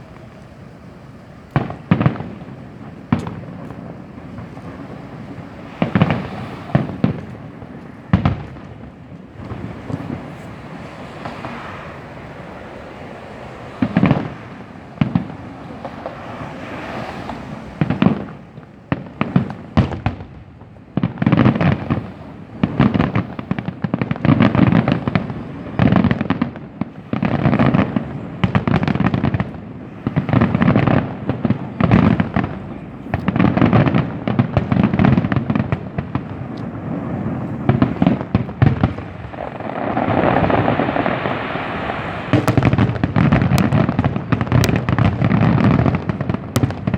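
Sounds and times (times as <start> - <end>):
fireworks booms and bangs: 0.0 - 46.9.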